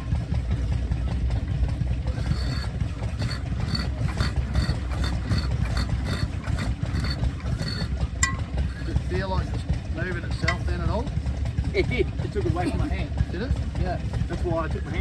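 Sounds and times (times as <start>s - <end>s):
low rumble of running engines: 0.0s - 15.0s
engine turned over by hand clicking: 2.1s - 9.1s.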